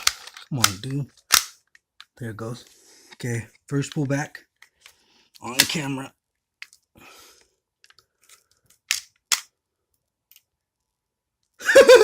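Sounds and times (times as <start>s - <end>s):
plastic pistol clicks: 0.0s - 1.6s.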